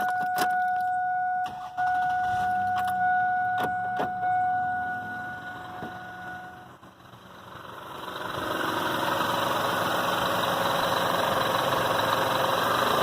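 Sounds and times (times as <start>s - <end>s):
electronic warning tone: 0.0s - 6.8s
car engine starting: 0.0s - 13.0s.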